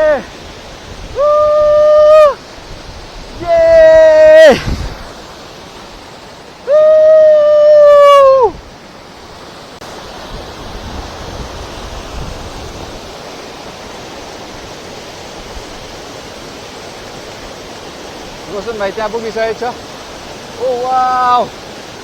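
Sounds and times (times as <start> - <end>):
person whooping: 0.0 - 0.3, 1.1 - 2.4, 3.4 - 4.8, 6.6 - 8.6, 20.6 - 21.5
waterfall rushing: 0.0 - 22.0.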